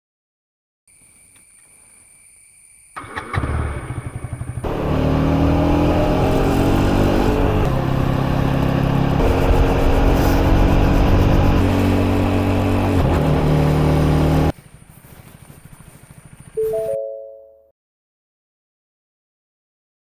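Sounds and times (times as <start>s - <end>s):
electric starter cranking: 3.0s - 6.1s
motorcycle engine running: 3.0s - 16.8s.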